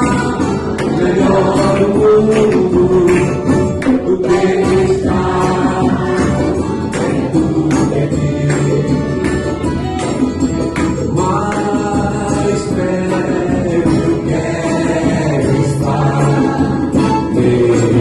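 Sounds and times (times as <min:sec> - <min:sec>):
gospel singing with instruments: 0:00.0 - 0:18.0.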